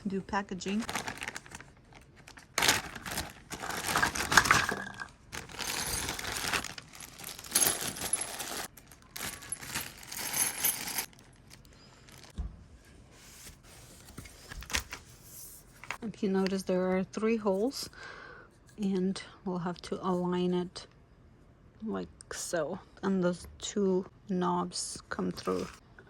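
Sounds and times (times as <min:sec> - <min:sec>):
furniture parts rustling: 0:02.2 - 0:12.3
metal hardware clinking: 0:04.0 - 0:11.1.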